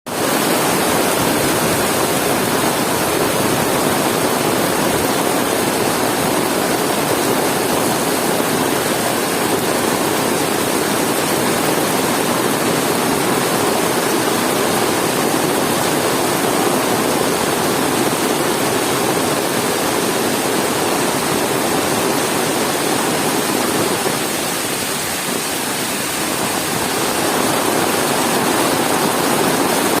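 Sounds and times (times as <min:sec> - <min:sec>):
heavy rain: 0:00.1 - 0:30.0.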